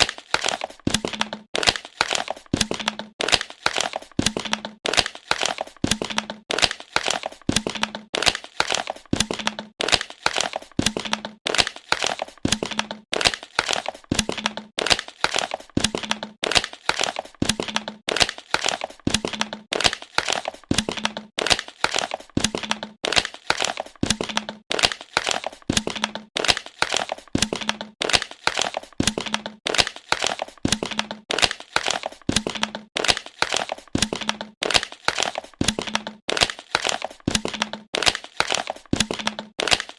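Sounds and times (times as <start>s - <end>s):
plastic bottle crackling: 0.0s - 39.9s.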